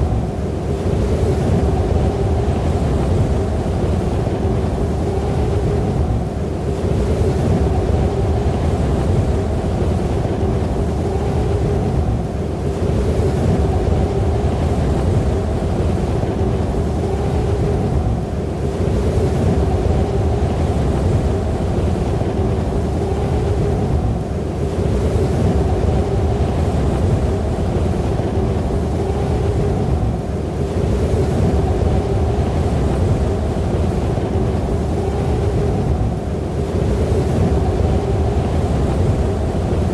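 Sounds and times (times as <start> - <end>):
howling snowstorm wind: 0.0 - 39.9.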